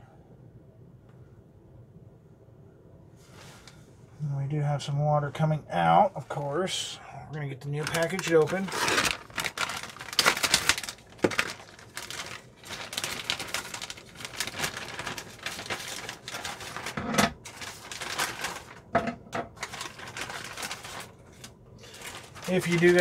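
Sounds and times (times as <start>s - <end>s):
plastic packaging crinkling and rattling: 7.4s - 23.0s.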